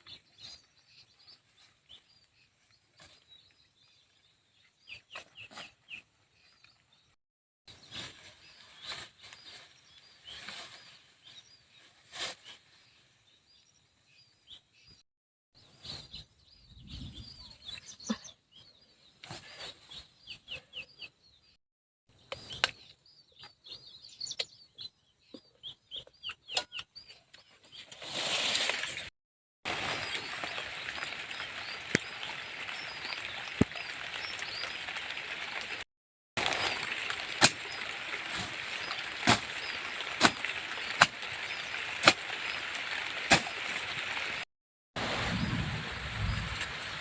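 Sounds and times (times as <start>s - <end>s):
birds chirping: 22.2s - 27.9s, 29.7s - 35.8s, 36.4s - 44.4s.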